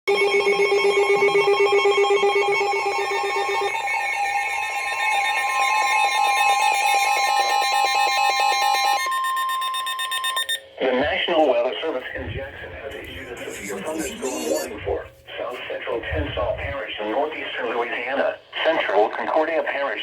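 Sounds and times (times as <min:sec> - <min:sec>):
warbling electronic alarm: 0:00.1 - 0:10.6, 0:12.9 - 0:14.8
steady alarm tone: 0:00.1 - 0:10.7, 0:12.9 - 0:14.9.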